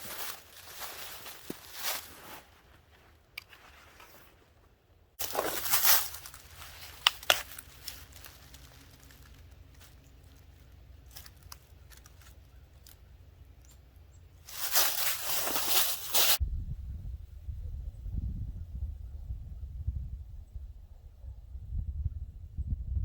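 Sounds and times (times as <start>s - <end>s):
dry leaves rustling and crunching: 0.0s - 4.4s, 5.2s - 13.2s, 14.4s - 16.4s
twig snapping: 5.2s - 13.0s.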